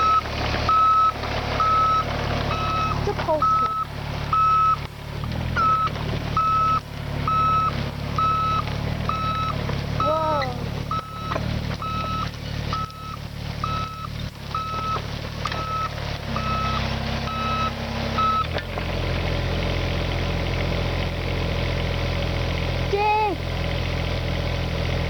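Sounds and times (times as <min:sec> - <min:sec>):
excavator travel alarm beeping: 0:00.0 - 0:04.9, 0:05.6 - 0:18.6
diesel engine running: 0:00.0 - 0:25.0.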